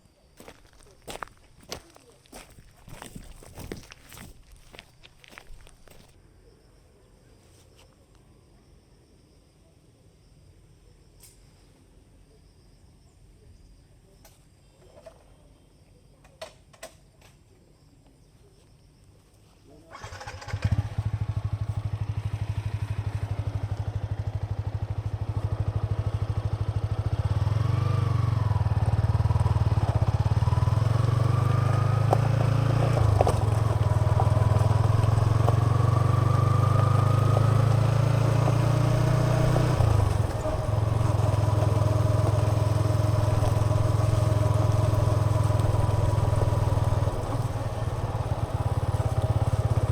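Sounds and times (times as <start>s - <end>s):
motorcycle engine running: 19.9s - 49.9s.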